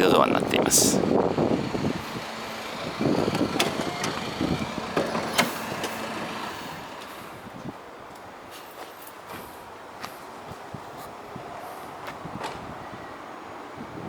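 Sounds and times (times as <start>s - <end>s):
sliding door rattling: 0.8s - 7.5s
door latch clicks: 4.9s - 6.0s.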